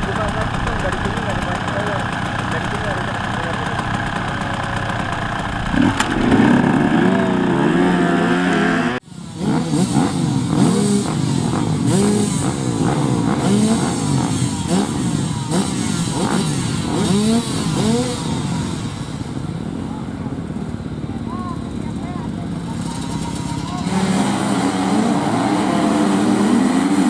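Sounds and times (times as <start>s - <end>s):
motorcycle engine revving: 0.0s - 9.0s.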